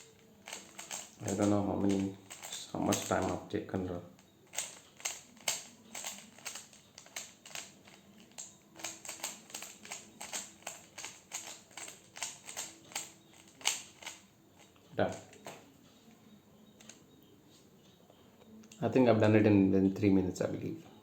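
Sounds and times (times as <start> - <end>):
puzzle cube plastic clicks: 0.0 - 3.4, 4.5 - 15.6.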